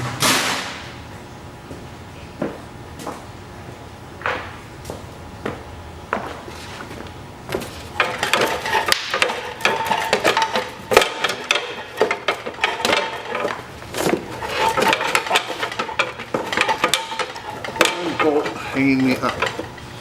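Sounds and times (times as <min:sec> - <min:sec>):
metal tools clinking on steel: 0:08.0 - 0:20.0.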